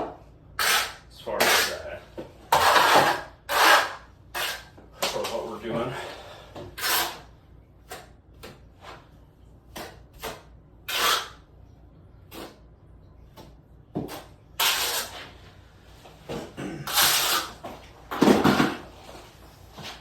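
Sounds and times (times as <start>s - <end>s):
trowel scraping mortar: 0.6s - 4.8s, 6.8s - 7.3s, 10.2s - 11.4s, 14.0s - 15.4s, 16.8s - 17.7s.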